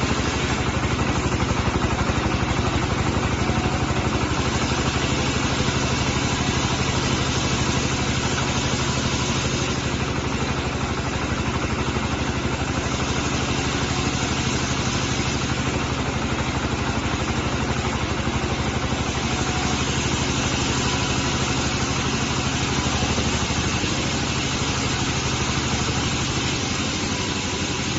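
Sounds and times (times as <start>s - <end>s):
diesel engine running: 0.0s - 27.9s.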